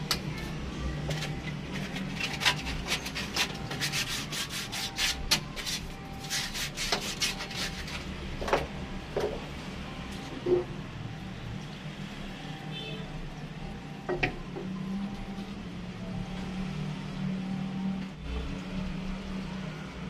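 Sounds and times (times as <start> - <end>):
rasping scrape on plastic pipe: 1.8 - 8.0.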